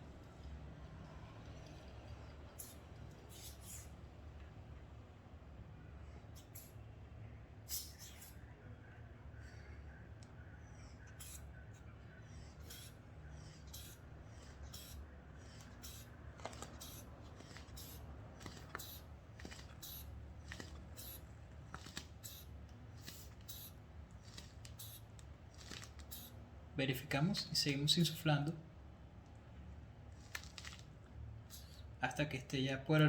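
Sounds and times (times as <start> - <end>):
inflation bulb hissing: 7.7 - 8.4, 12.4 - 26.4, 31.5 - 31.9.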